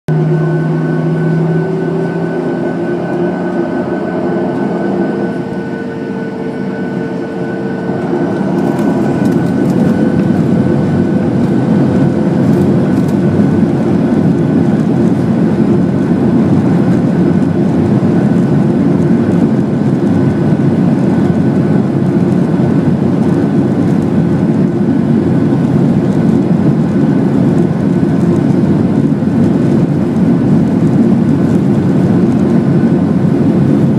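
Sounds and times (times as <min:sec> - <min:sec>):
jet engines spooling up: 0:00.1 - 0:33.9.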